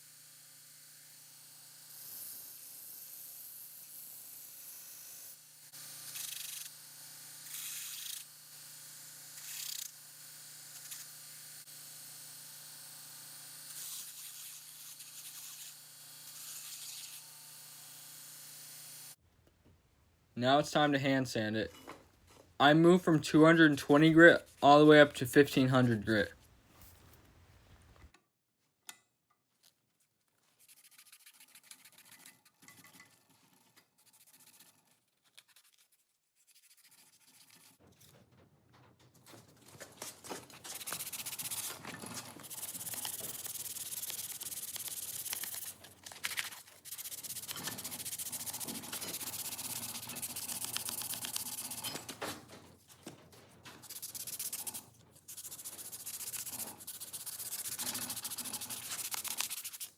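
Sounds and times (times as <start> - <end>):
sandpaper rubbing on knife: 13.8 - 15.8, 30.4 - 37.8, 40.6 - 52.0, 53.8 - 59.9.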